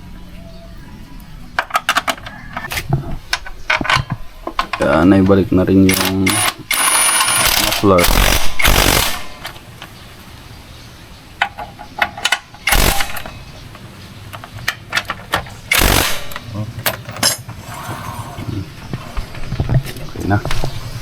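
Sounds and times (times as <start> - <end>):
metal tools clinking: 1.6 - 10.0, 11.4 - 19.6
impact wrench bursts: 5.8 - 9.6, 11.5 - 13.7, 14.4 - 17.5.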